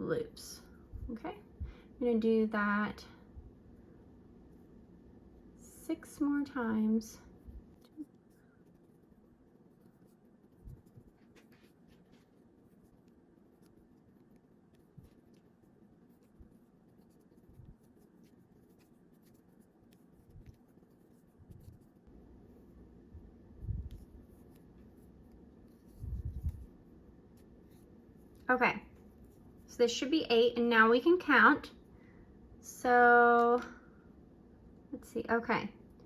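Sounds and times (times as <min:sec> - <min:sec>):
yarn rustling through crochet hook: 0:04.4 - 0:31.4.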